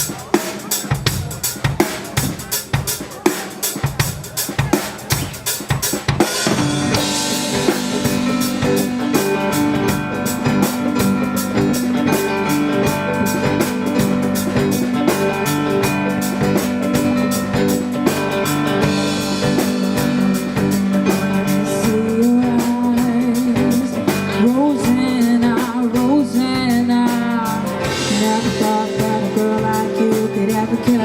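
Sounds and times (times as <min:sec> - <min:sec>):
drum kit beat: 0:00.0 - 0:31.0
bass guitar: 0:03.8 - 0:31.0
held keyboard or guitar chords: 0:04.3 - 0:31.0.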